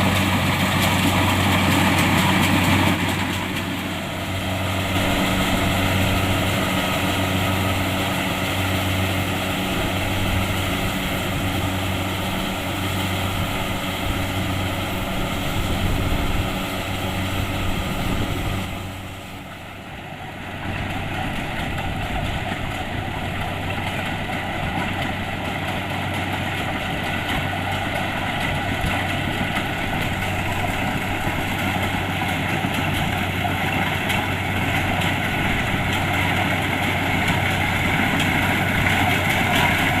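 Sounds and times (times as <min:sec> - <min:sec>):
combine harvester engine and threshing: 0:00.0 - 0:40.0.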